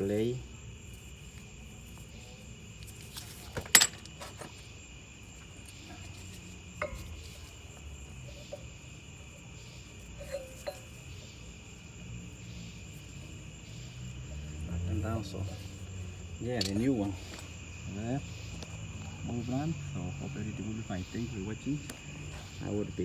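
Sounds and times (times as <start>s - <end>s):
crickets chirring: 0.0s - 23.0s
sharp metal clinks: 9.8s - 11.6s.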